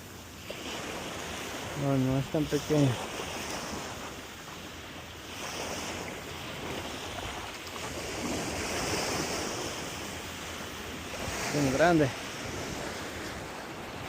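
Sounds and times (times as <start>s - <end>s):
wind and surf rushing: 0.0s - 14.0s
wind buffeting microphone: 0.6s - 14.0s.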